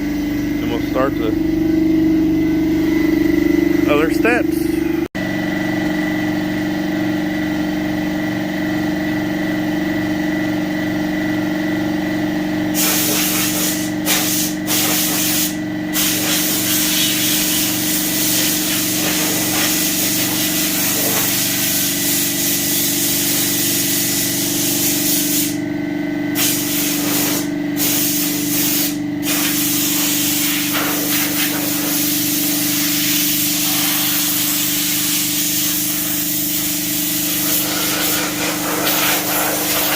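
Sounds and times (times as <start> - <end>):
air compressor humming: 0.0 - 39.9
air blow gun hissing: 12.7 - 25.6, 26.4 - 39.9.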